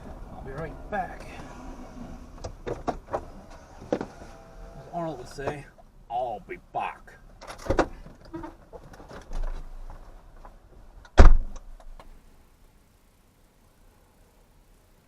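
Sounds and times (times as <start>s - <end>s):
quiet knocks and rustles: 0.0s - 4.4s, 7.4s - 10.8s
car door shutting: 0.5s - 5.6s, 7.5s - 8.6s, 11.2s - 11.6s.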